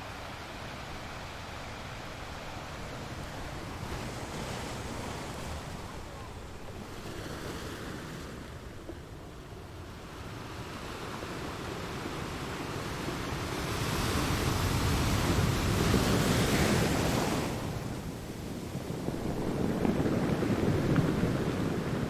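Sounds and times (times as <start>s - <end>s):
sea waves on shore: 0.0s - 22.0s.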